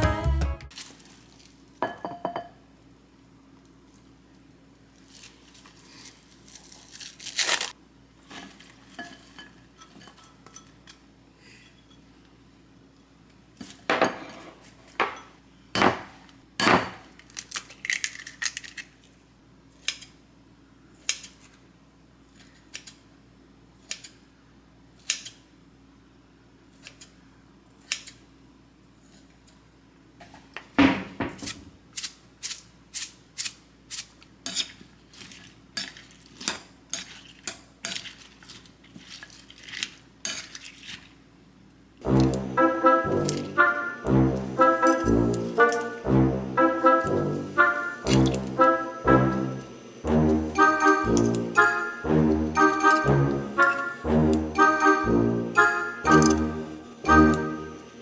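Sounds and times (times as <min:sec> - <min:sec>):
utensils clinking against dishes: 0:01.8 - 0:02.5, 0:08.3 - 0:11.0, 0:35.8 - 0:38.4, 0:44.6 - 0:46.0, 0:48.0 - 0:48.6, 0:50.5 - 0:55.0, 0:55.6 - 0:57.6.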